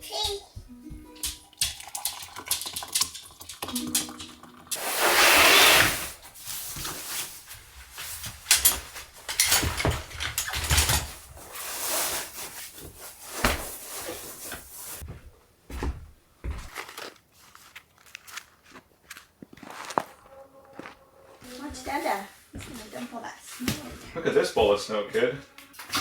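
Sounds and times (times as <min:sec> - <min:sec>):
loud rushing hiss: 0:04.8 - 0:06.2
dishes and doors knocking: 0:08.5 - 0:11.3.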